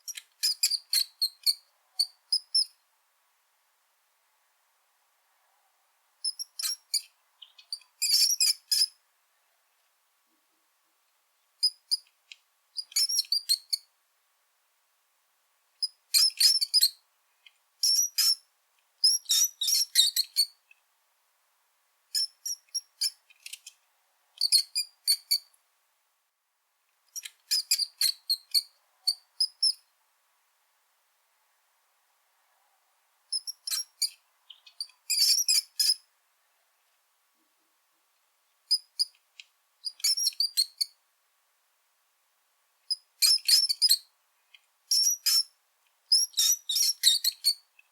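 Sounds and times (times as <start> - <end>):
rat squeaking: 6.2 - 9.0, 12.8 - 13.8, 17.8 - 18.4, 19.0 - 20.6, 33.3 - 36.0, 39.8 - 40.9, 42.9 - 44.0, 44.9 - 45.5, 46.1 - 47.6.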